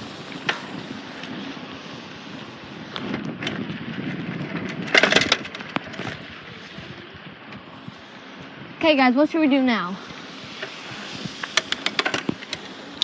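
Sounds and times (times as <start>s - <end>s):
bicycle rattles and knocks: 0.0s - 1.4s, 2.3s - 7.7s, 10.6s - 13.0s
bicycle rolling rumble: 0.0s - 13.0s.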